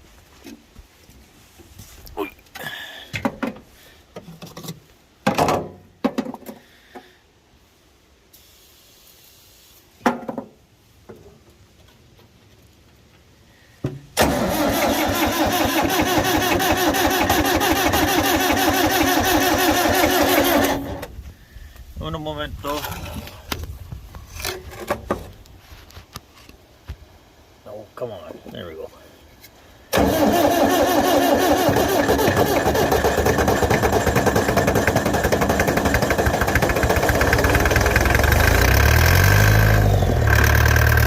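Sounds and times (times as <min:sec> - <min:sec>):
diesel engine cranking: 0:14.2 - 0:21.2, 0:29.9 - 0:41.0.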